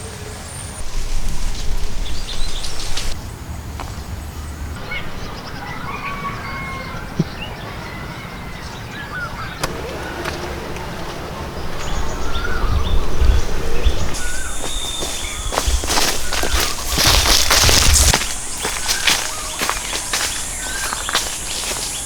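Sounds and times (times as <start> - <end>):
birds chirping: 0.0 - 22.0
outdoor noise: 0.0 - 22.0
low rumble: 9.7 - 19.2.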